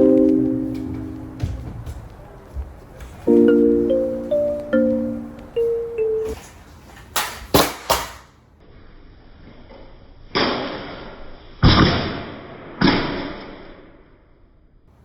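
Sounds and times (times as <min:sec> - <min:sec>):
heavy thuds: 0:00.8 - 0:02.2.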